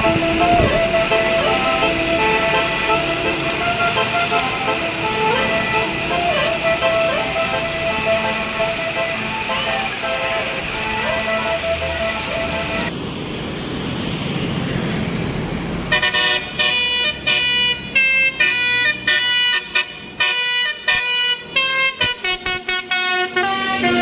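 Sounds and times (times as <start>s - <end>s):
multi-tone bus air horn melody: 0.0s - 12.9s, 15.9s - 24.0s
rushing noise: 0.0s - 18.3s.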